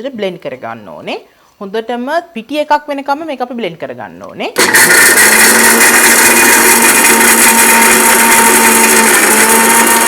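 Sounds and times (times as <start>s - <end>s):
electric blender grinding nuts: 4.6s - 10.0s.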